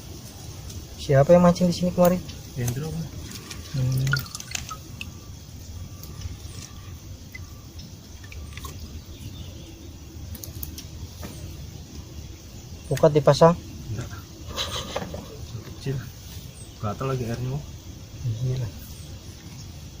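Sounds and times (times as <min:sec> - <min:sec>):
low background noise: 0:00.0 - 0:20.0
water dripping and splashing: 0:01.8 - 0:09.3.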